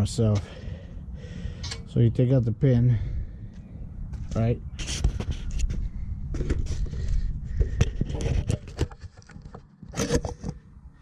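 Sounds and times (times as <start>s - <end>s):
low rumble: 2.9s - 8.1s.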